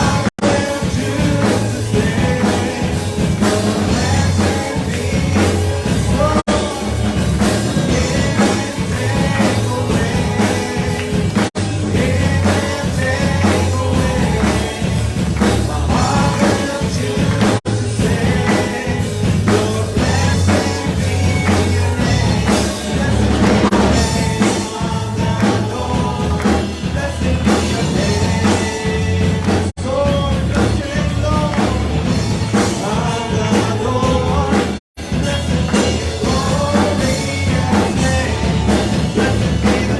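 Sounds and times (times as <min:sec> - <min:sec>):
bass: 0:00.0 - 0:39.9
drums: 0:00.0 - 0:39.9
worship band with singing: 0:00.0 - 0:39.9.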